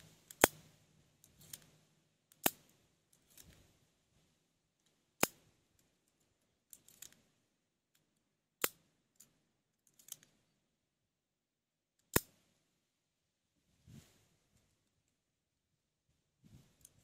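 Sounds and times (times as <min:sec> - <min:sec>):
soft clicks and handling noises: 0:00.0 - 0:10.6, 0:16.1 - 0:17.0.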